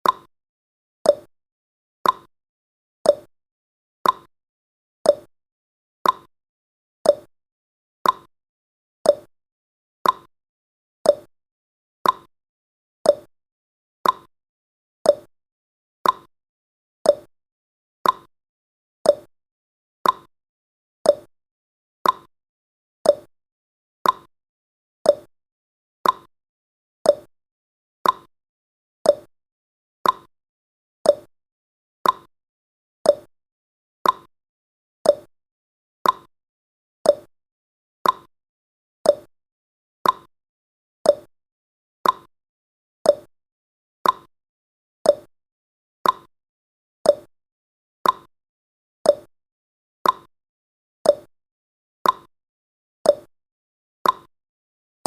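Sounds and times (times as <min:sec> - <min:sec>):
clock ticking: 0:30.0 - 0:30.3, 0:38.0 - 0:38.3, 0:40.0 - 0:40.3, 0:48.0 - 0:48.3.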